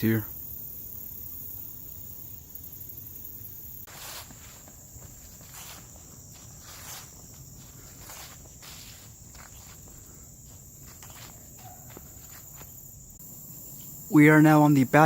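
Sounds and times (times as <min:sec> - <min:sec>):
high-pitched insect chorus: 0:00.0 - 0:15.0
footsteps at walking pace: 0:03.9 - 0:12.9.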